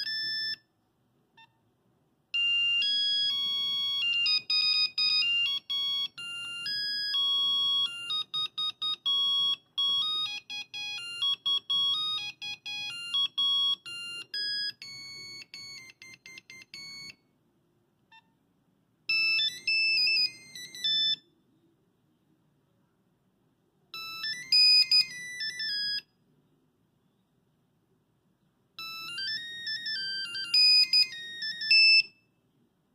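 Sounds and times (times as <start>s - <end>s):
mobile phone ringtone beeping: 0.0s - 0.7s, 2.4s - 17.3s, 19.1s - 21.3s, 23.9s - 26.1s, 28.8s - 32.3s.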